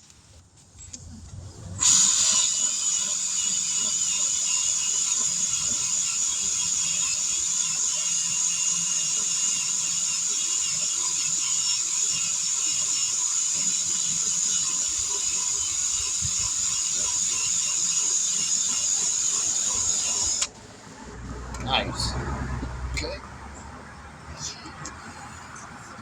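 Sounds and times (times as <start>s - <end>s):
air compressor running: 1.8s - 21.0s.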